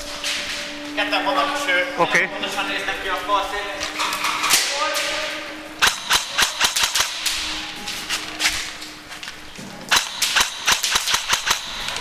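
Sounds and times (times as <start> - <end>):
airsoft guns firing: 5.8 - 7.5, 9.9 - 12.0.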